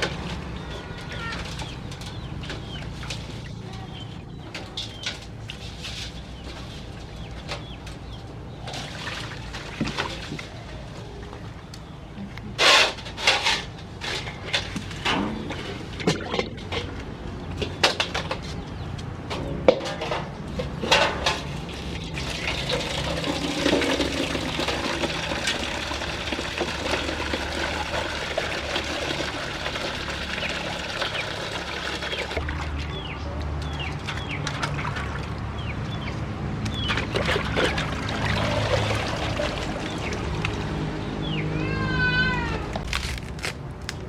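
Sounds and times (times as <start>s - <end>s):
water splashing: 21.6s - 41.0s.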